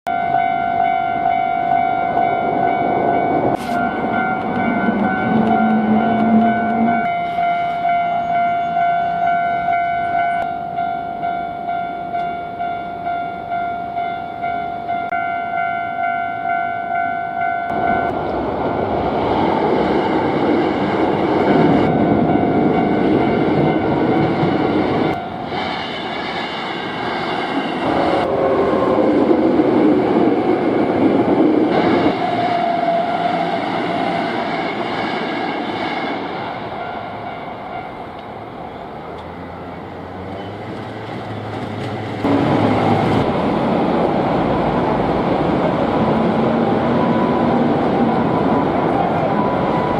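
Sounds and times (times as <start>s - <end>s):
level-crossing warning bell ringing: 0.1s - 26.2s, 36.3s - 43.3s, 44.6s - 49.9s
train running over crossing: 0.1s - 49.9s.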